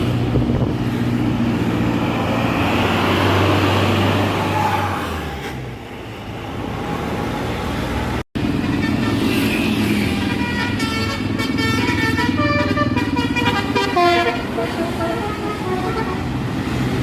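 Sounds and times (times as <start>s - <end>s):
traffic: 0.0s - 17.0s
bus engine running: 5.6s - 17.0s
multi-tone bus horn melody: 8.5s - 16.6s.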